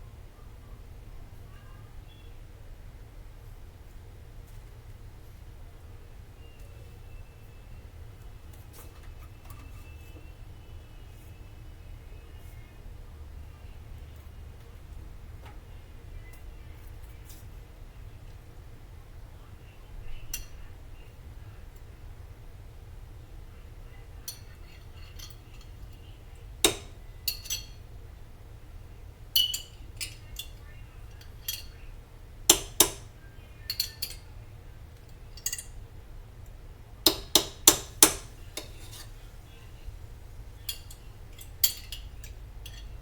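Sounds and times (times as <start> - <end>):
metal utensil scraping inside a jar: 37.1 - 39.2.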